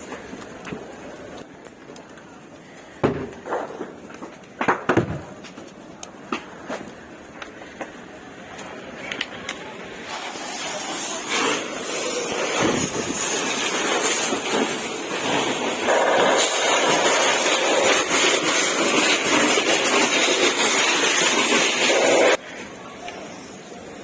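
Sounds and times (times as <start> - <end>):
rushing noise: 9.7 - 22.4.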